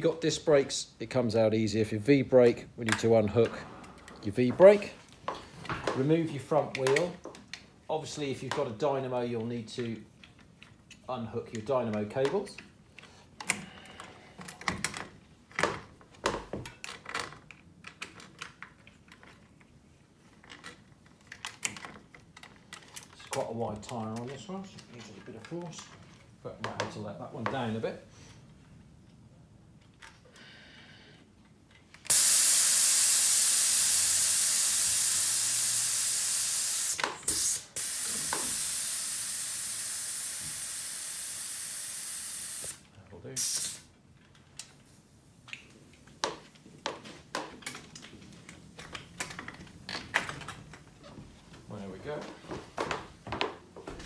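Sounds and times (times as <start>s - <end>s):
air hissing from tyre valve: 32.1s - 42.8s, 43.4s - 43.9s.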